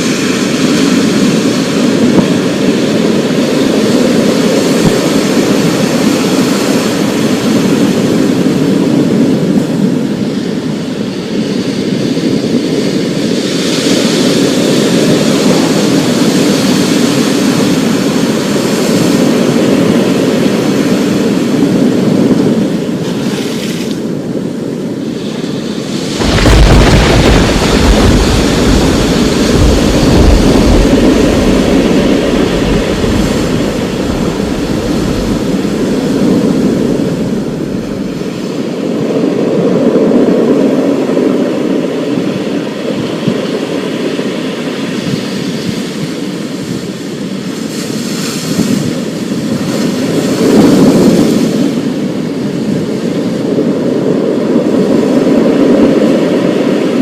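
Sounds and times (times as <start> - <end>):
heavy rain: 24.8 - 42.0
thunder rolling: 25.8 - 40.2.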